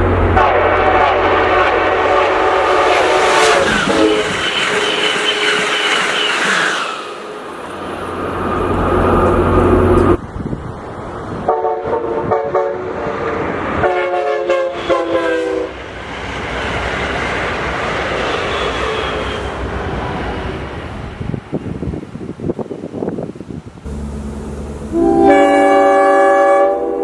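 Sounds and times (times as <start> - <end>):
passing train rushing: 0.0 - 27.0
train air horn blasts: 0.2 - 5.7, 11.5 - 15.8, 24.8 - 27.0.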